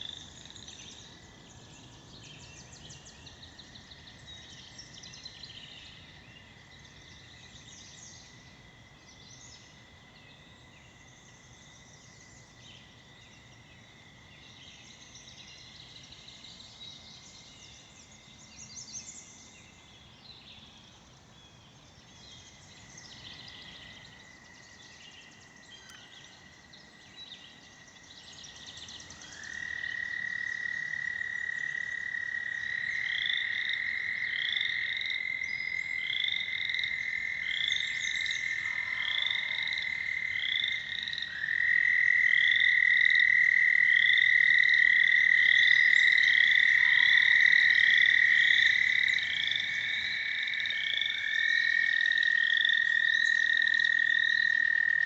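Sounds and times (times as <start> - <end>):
toads trilling: 29.0 - 55.0.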